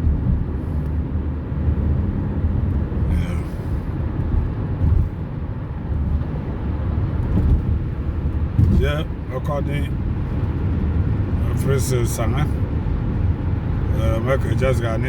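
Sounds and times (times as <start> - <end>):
steady low rumble: 0.0 - 15.0.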